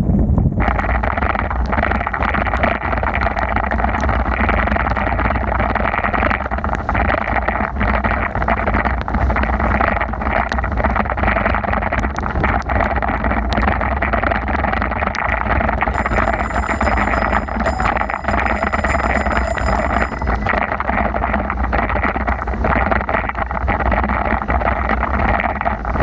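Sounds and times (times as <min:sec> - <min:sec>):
wind buffeting microphone: 0:00.0 - 0:02.7
high-pitched bell ringing: 0:15.9 - 0:21.7.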